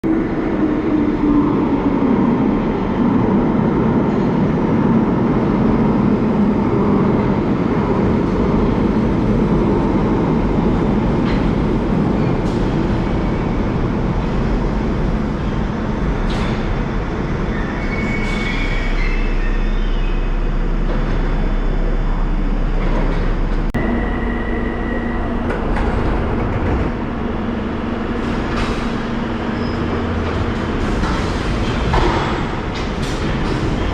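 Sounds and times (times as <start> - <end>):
train rumble and wheel noise: 0.0 - 33.9
steady tone and hum: 19.0 - 33.9.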